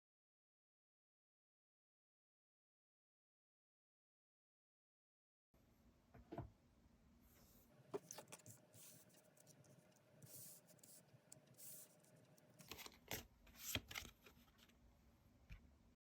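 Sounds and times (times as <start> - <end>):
cards sliding: 8.0 - 14.4.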